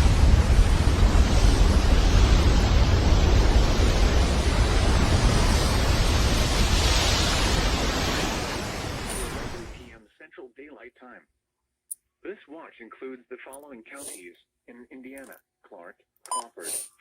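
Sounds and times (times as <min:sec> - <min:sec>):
radio static hiss: 0:08.1 - 0:11.1, 0:12.3 - 0:15.4.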